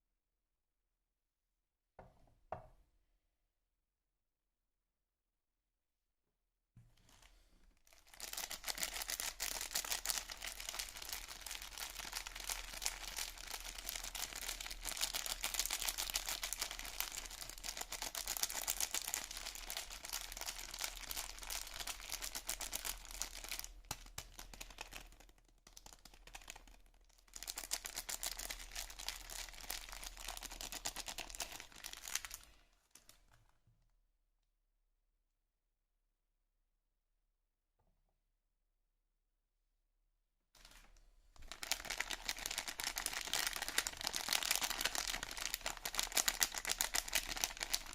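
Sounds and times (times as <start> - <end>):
wrapper tearing: 7.0 - 33.1, 40.6 - 47.9
wrapper crinkling and rustling: 7.0 - 33.4, 40.6 - 47.9.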